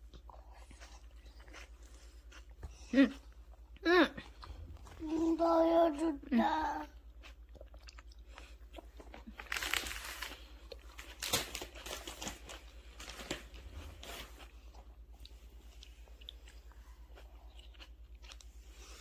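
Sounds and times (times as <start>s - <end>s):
soft crinkling and rustling: 8.9s - 17.1s.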